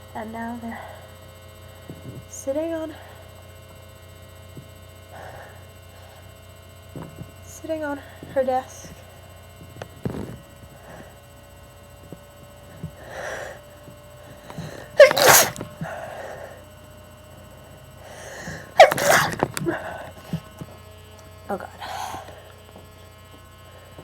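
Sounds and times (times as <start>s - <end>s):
breaths in: 5.1s - 6.3s, 12.8s - 16.6s, 21.6s - 22.6s
person sneezing: 14.4s - 16.5s, 18.1s - 20.4s.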